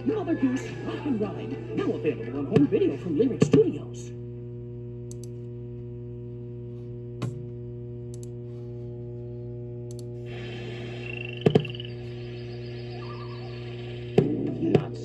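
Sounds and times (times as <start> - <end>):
low electrical hum: 0.0 - 15.0
faint clicks: 5.1 - 5.5, 8.1 - 8.4, 9.9 - 10.1.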